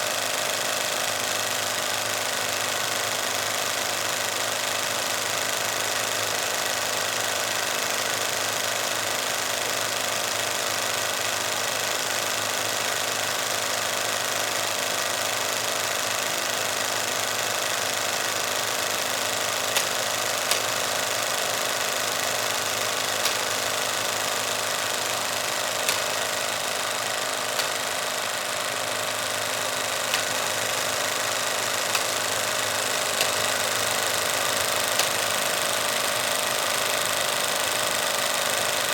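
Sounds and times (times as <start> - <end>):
film projector running: 0.0 - 38.9
sharp irregular clicks: 19.2 - 38.9.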